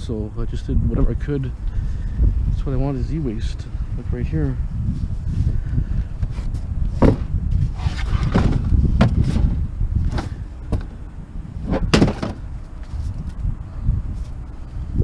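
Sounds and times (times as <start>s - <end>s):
steady low rumble: 0.0s - 15.0s
scrap knocking and clattering: 7.0s - 10.9s.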